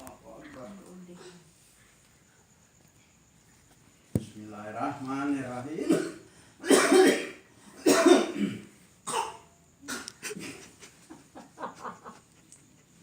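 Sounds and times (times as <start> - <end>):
people coughing: 5.8 - 10.5.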